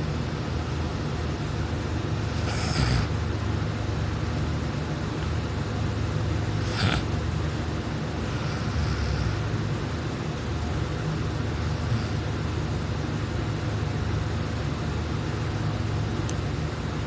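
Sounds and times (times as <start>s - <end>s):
person snoring: 2.3s - 3.2s, 6.6s - 7.1s, 8.2s - 9.4s.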